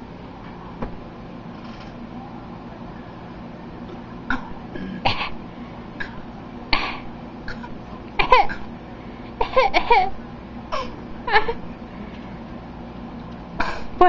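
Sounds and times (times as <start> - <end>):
child fake coughing: 6.8 - 8.7, 9.4 - 10.2.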